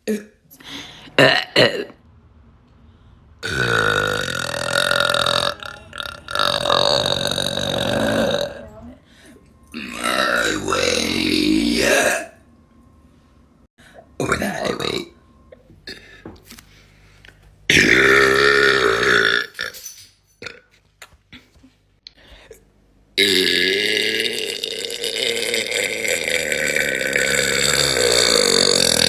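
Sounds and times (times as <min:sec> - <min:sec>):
woman burping: 0:00.0 - 0:00.4, 0:01.2 - 0:02.0, 0:03.4 - 0:08.9, 0:17.7 - 0:19.8, 0:23.2 - 0:29.0.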